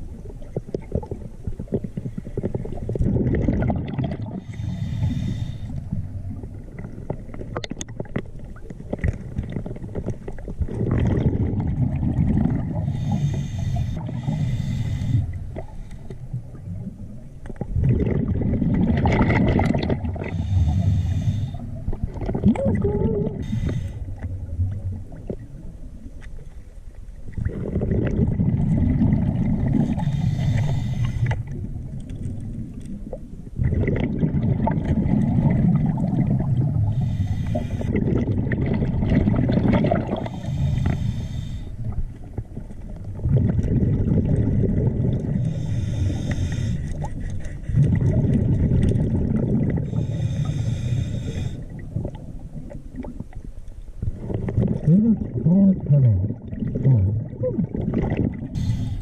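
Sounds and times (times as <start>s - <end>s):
exhaled air bubbling: 0.0s - 59.0s
regulator breath hissing: 4.4s - 5.8s, 12.8s - 16.1s, 20.3s - 21.7s, 23.4s - 24.1s, 29.9s - 31.4s, 36.9s - 37.9s, 40.2s - 41.8s, 45.5s - 47.3s, 49.9s - 51.7s, 58.6s - 59.0s.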